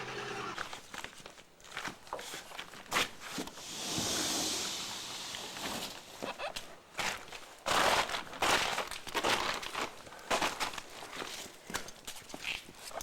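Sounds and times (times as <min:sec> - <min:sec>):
hissing noise: 0:03.6 - 0:06.3.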